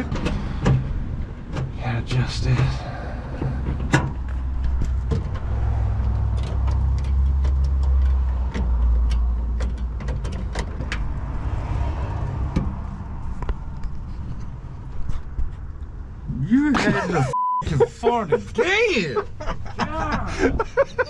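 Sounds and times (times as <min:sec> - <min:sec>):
low vehicle rumble: 0:00.0 - 0:21.0
sharp metallic clicks and taps: 0:06.3 - 0:11.1.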